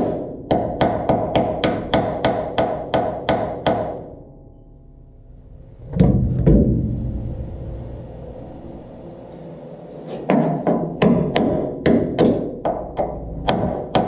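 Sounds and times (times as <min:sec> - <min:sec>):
heavy deep thuds: 0:05.7 - 0:08.9.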